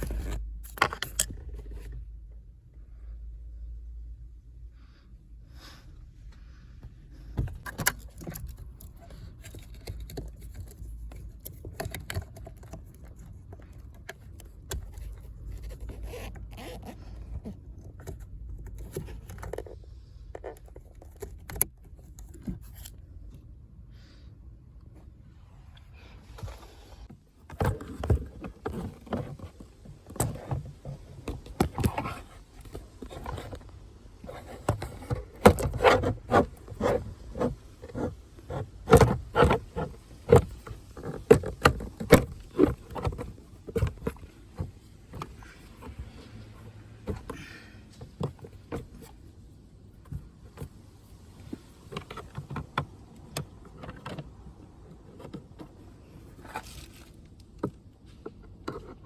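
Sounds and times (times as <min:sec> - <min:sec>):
tools and parts clicking and rattling: 0:00.0 - 0:02.0, 0:07.4 - 0:23.0.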